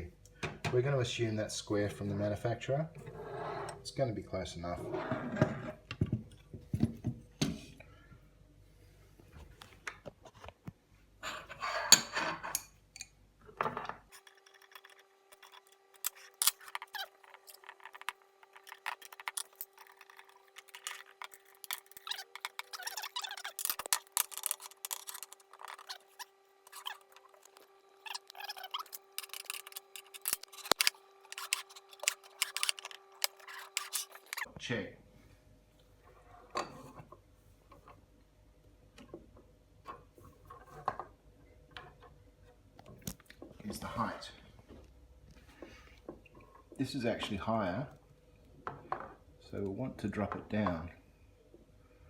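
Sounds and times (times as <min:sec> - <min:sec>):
faint steady hum: 0:00.0 - 0:52.0
metal parts clicking and scraping: 0:14.1 - 0:34.5.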